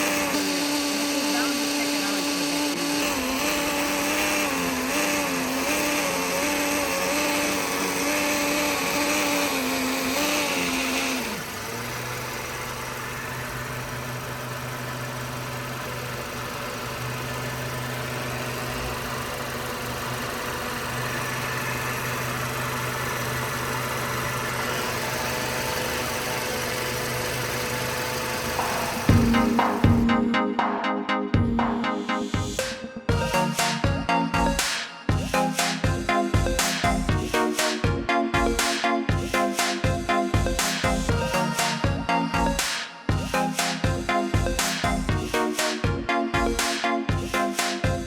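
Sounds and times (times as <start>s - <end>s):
electric water pump whining: 0.0s - 30.1s.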